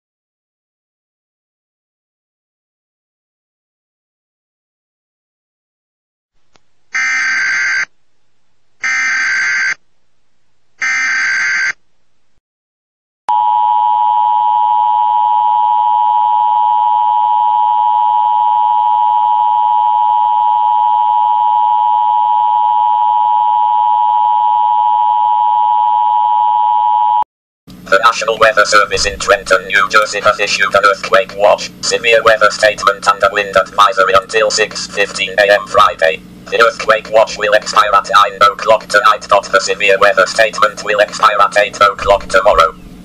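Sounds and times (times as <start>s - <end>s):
two-tone attention signal: 13.3s - 27.2s.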